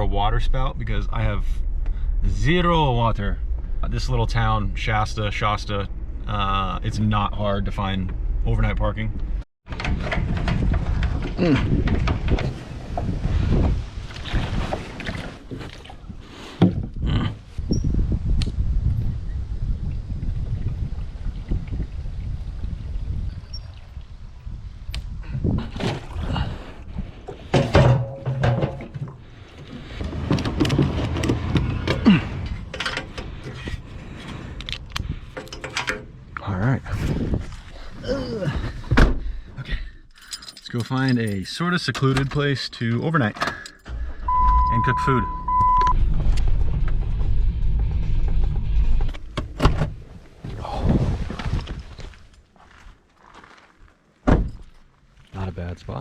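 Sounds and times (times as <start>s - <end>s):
car driving rumble: 0.0s - 40.0s, 43.3s - 52.3s
irregular knocks and clunks: 9.7s - 15.9s, 16.6s - 17.0s, 26.9s - 36.5s, 38.6s - 39.6s
rustling and clattering: 9.7s - 16.8s, 26.9s - 38.0s
car door shutting: 43.9s - 47.3s.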